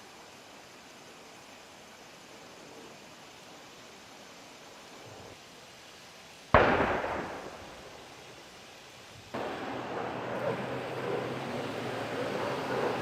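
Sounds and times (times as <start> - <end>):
sharp bang with echo: 6.6 - 7.8
steady rumbling noise: 6.6 - 8.6, 9.2 - 13.0.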